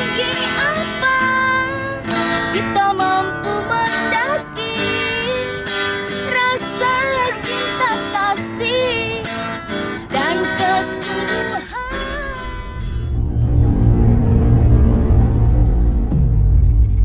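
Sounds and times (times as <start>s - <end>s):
strummed acoustic guitar: 0.0s - 12.5s
wavering melody line: 11.8s - 16.1s.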